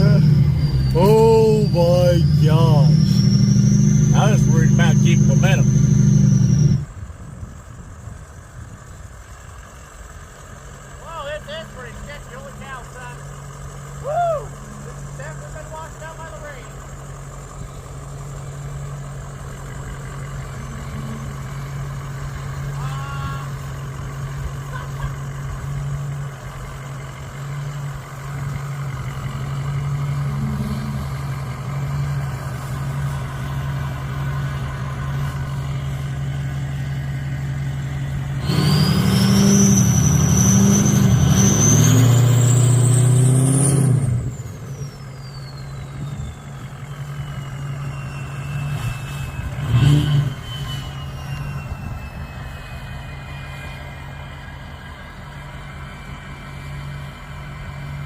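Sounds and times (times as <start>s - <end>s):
turbo whistle: 0.0s - 6.9s, 38.4s - 42.2s, 44.5s - 53.8s
diesel truck engine revving: 0.0s - 58.0s.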